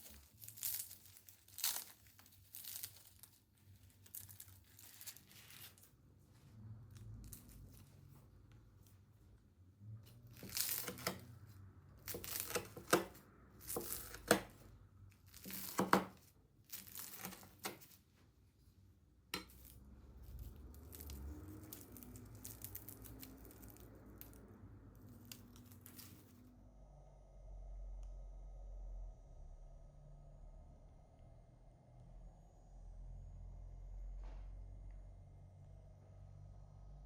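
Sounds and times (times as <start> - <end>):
pastry crackling as torn: 10.4 - 11.3, 12.0 - 14.6, 15.2 - 17.9, 19.6 - 24.4.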